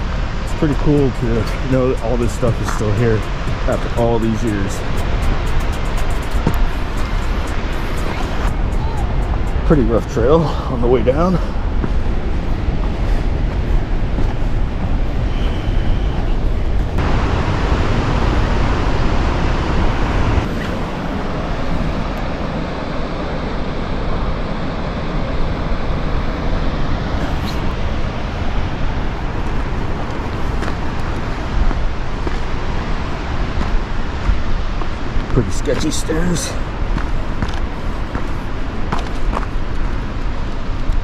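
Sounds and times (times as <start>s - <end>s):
waterfall roaring: 0.0s - 41.0s.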